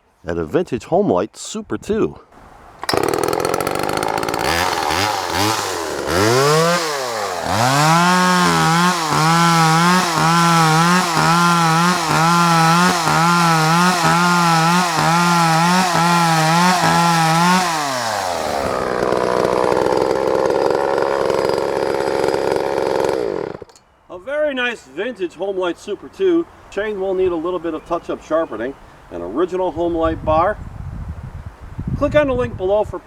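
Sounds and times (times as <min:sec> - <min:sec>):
chainsaw idling and revving: 0:02.8 - 0:23.8.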